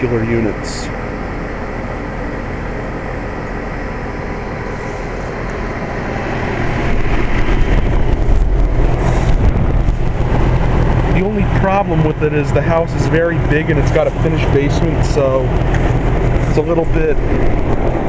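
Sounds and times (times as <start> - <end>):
heat pump fan and compressor humming: 0.0 - 18.0.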